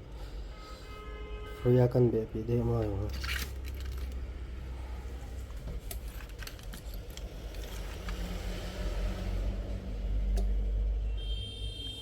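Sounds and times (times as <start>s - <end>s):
clicks and rattles of handled tools: 3.0s - 4.2s, 5.7s - 8.2s.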